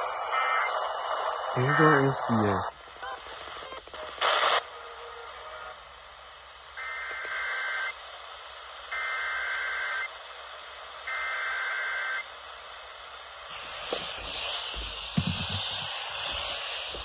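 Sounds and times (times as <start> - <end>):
radio hiss: 0.0 - 17.0.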